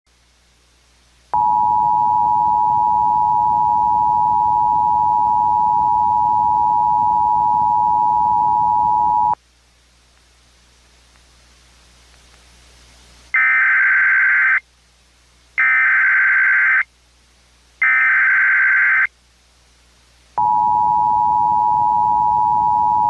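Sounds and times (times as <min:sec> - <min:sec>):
two-tone attention signal: 0:01.4 - 0:09.4, 0:20.4 - 0:23.0.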